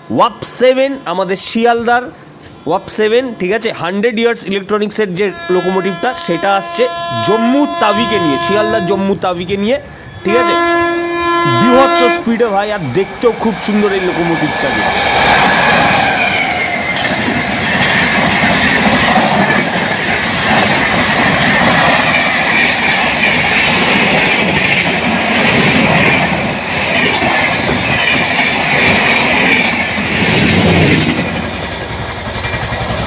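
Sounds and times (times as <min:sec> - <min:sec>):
train rushing past: 0:00.0 - 0:33.0
wheels clickety-clack: 0:16.8 - 0:33.0.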